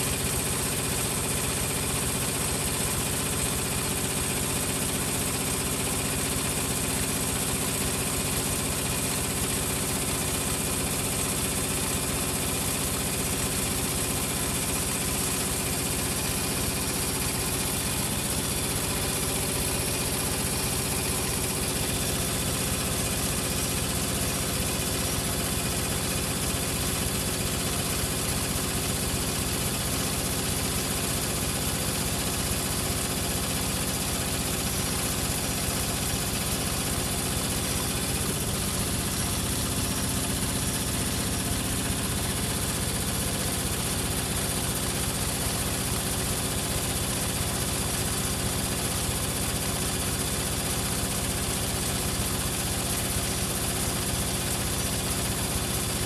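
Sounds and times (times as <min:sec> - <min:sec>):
washing machine motor hum and whine: 0:00.0 - 0:56.0.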